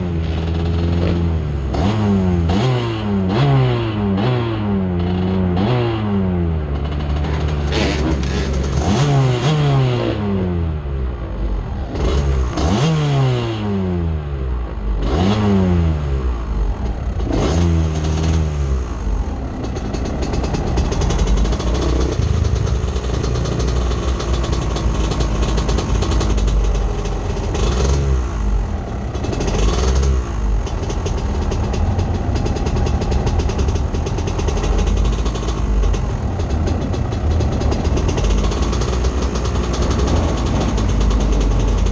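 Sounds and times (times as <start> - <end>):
rattling and clatter: 0.0 - 1.9, 6.7 - 9.5, 16.7 - 41.9
atv engine revving: 0.0 - 41.9.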